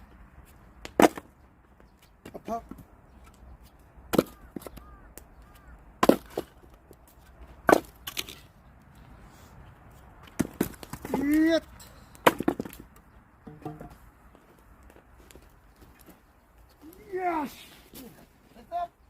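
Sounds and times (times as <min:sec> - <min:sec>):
axe splitting firewood: 0:00.8 - 0:01.3, 0:04.1 - 0:04.8, 0:06.0 - 0:06.8, 0:07.6 - 0:08.4, 0:10.3 - 0:14.0
person shouting with effort: 0:11.1 - 0:11.7, 0:16.8 - 0:17.8.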